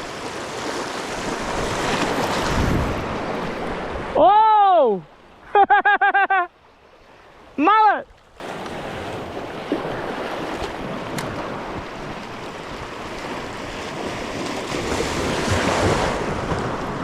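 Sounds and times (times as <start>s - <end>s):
waves washing against rocks: 0.0s - 3.9s, 8.4s - 17.0s
wind buffeting microphone: 1.2s - 4.1s.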